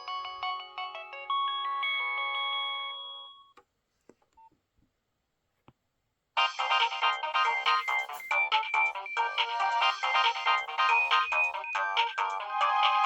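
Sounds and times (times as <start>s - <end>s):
mobile phone ringtone melody: 0.0s - 3.5s, 6.4s - 13.0s.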